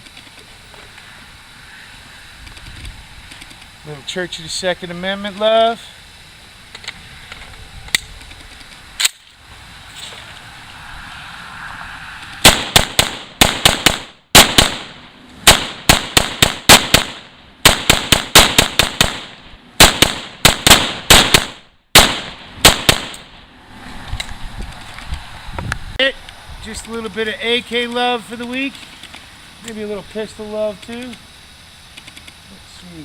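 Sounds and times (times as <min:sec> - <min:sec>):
sharp clicks: 0:06.7 - 0:09.3, 0:30.8 - 0:31.3, 0:31.9 - 0:32.4
rifle fired rapidly: 0:12.4 - 0:23.2.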